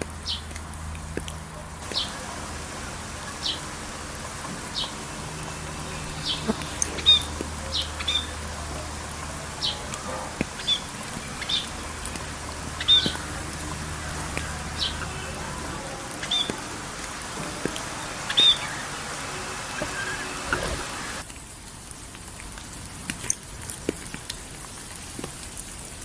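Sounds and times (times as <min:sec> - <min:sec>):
background hiss: 0:00.0 - 0:26.0
songbird chirping: 0:01.8 - 0:21.2.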